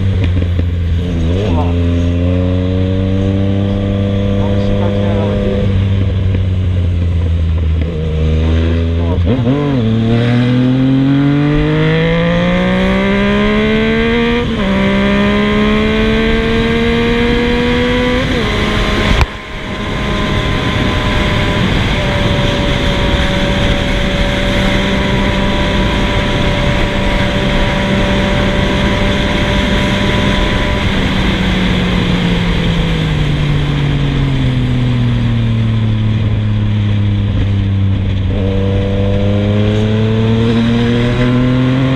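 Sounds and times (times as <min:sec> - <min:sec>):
exhaust crack: 0:00.0 - 0:02.3
motorcycle engine accelerating: 0:00.0 - 0:41.9.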